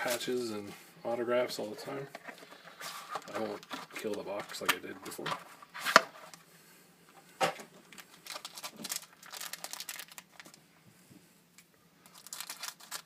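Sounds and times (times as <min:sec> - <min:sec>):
plastic wrapping crinkling and tearing: 0:07.8 - 0:10.6, 0:12.0 - 0:13.0.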